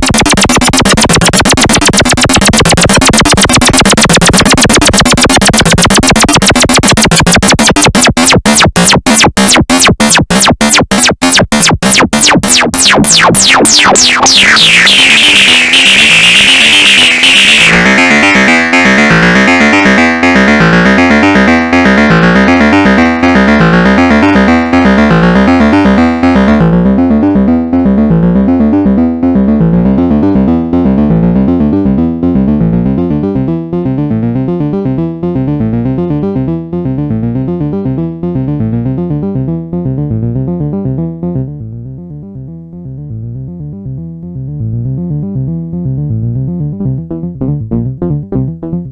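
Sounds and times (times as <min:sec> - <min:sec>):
synthesizer sequenced pattern: 0:00.0 - 0:26.7
steady synth bass: 0:00.0 - 0:34.4.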